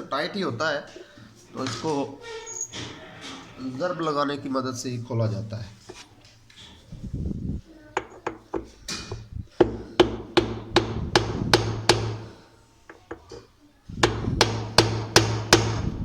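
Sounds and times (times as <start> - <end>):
hammer striking metal: 14.0 - 15.9.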